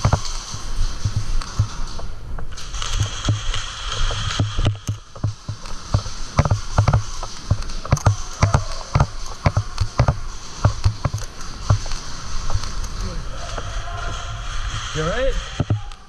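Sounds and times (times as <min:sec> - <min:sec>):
dull thuds with sharp clicks: 0:04.3 - 0:11.9.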